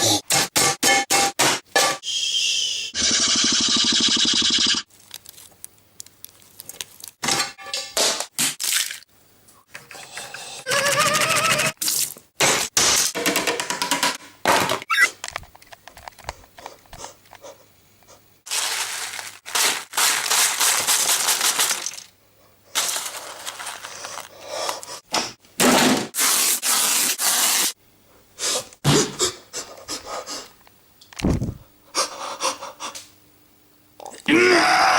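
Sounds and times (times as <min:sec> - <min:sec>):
rough crunching and scraping: 0:22.8 - 0:24.4.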